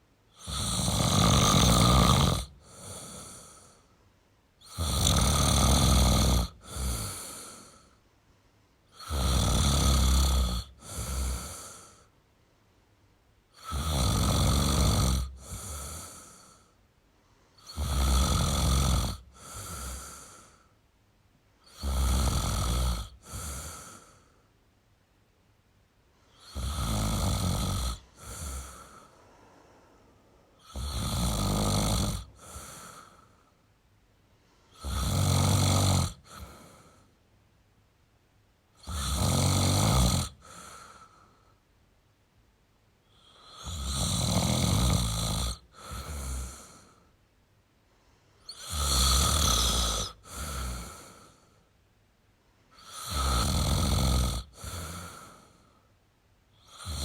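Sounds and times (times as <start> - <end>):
man snoring: 0.3 - 3.8, 4.6 - 8.0, 8.9 - 12.1, 13.5 - 16.8, 17.6 - 20.7, 21.6 - 24.3, 26.3 - 29.8, 30.6 - 33.5, 34.7 - 37.1, 38.8 - 41.2, 43.1 - 47.1, 48.5 - 51.5, 52.8 - 55.8, 56.6 - 57.0.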